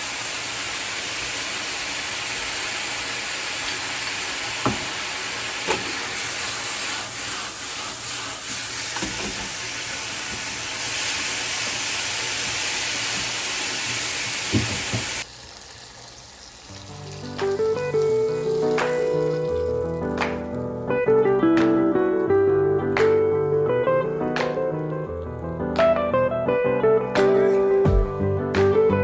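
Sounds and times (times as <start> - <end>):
food sizzling in a frying pan: 0.0 - 21.3.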